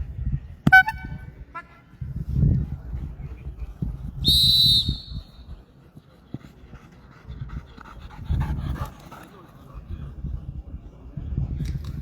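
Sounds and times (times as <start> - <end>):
short whistle blast: 4.2 - 5.4.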